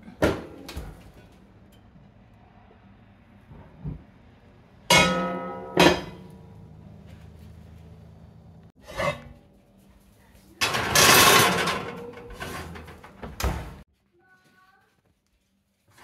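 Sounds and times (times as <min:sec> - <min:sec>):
metal cookware clanking: 0:04.9 - 0:06.6, 0:10.6 - 0:13.2
cookware scraping: 0:08.8 - 0:09.5, 0:10.6 - 0:13.2.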